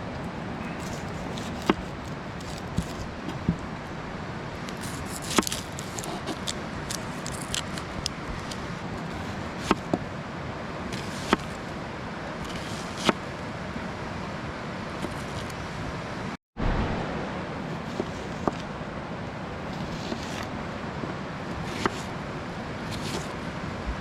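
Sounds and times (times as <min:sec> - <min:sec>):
stream rushing: 0:15.6 - 0:24.0.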